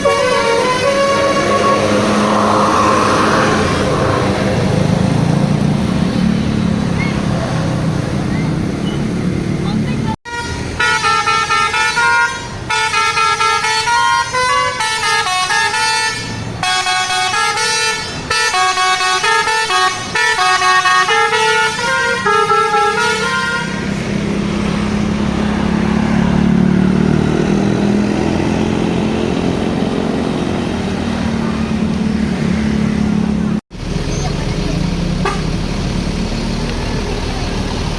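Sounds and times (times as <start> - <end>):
musical air horn melody: 0.0 - 2.7, 10.3 - 24.0
bus engine running: 0.0 - 37.9.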